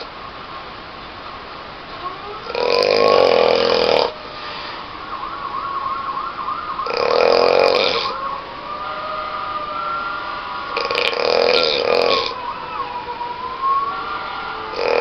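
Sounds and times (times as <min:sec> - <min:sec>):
faint wavering tone: 0:01.3 - 0:15.0
person snoring loudly: 0:02.5 - 0:04.2, 0:06.8 - 0:08.2, 0:10.8 - 0:12.4, 0:14.7 - 0:15.0.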